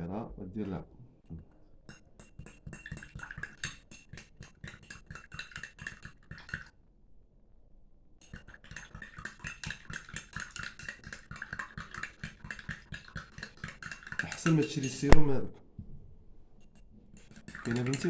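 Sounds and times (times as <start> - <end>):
spoon clinking in a glass: 1.9 - 6.7, 8.2 - 15.1, 16.6 - 18.0.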